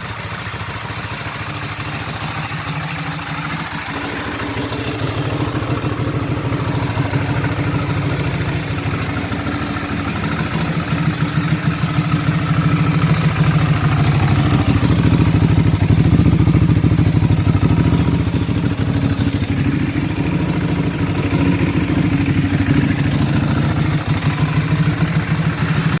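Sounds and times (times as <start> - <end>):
motorcycle engine idling: 0.0 - 26.0.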